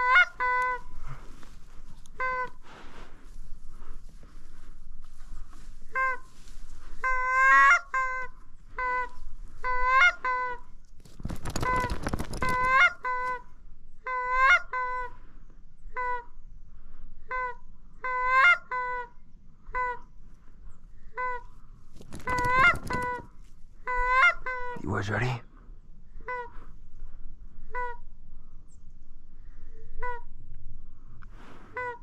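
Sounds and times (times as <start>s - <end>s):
geese honking: 0.0s - 1.1s, 2.1s - 2.6s, 5.8s - 10.6s, 22.3s - 24.8s
rustling noise: 0.7s - 9.7s, 10.8s - 13.4s, 21.8s - 23.7s.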